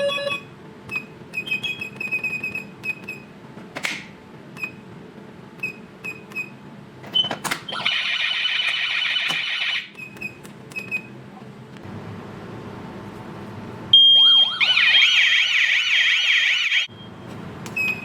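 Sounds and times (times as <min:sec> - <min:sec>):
continuous alarm buzzer: 0:07.8 - 0:09.9, 0:14.0 - 0:17.0.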